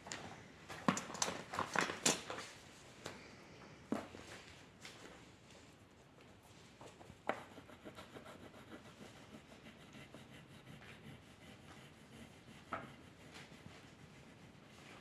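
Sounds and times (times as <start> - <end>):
pencil scratching on paper: 7.4 - 14.7.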